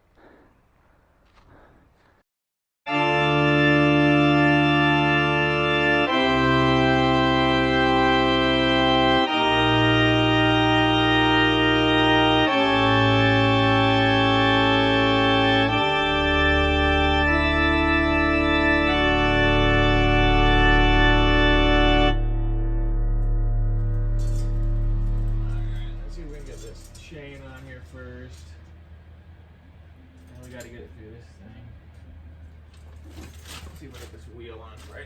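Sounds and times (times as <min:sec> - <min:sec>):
sustained organ-like chords: 0:02.9 - 0:33.6.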